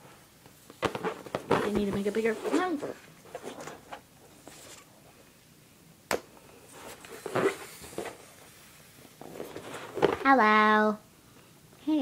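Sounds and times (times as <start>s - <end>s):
balloon handling: 0.6s - 4.8s, 6.7s - 8.5s, 9.1s - 10.3s.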